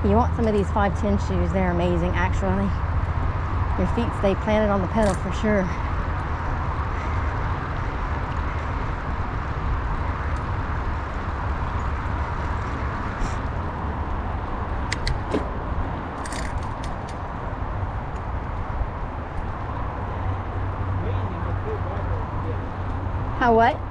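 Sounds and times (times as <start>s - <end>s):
bike clicks and rattles: 4.9s - 19.6s.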